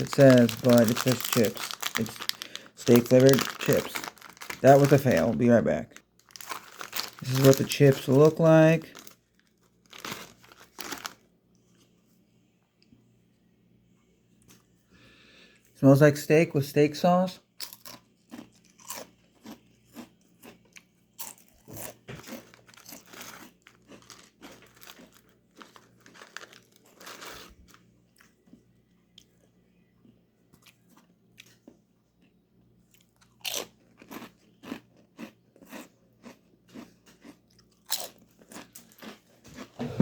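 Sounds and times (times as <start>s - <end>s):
potato chips crunching: 0.0s - 11.3s, 17.6s - 29.4s, 32.9s - 40.0s.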